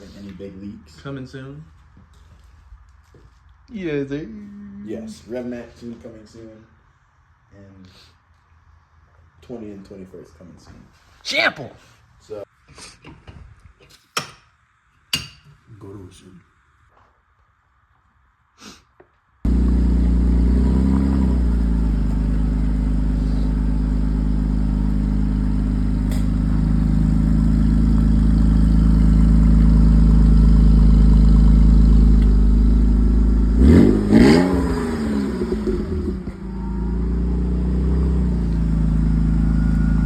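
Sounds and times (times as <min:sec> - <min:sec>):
car engine revving: 0:19.5 - 0:40.0.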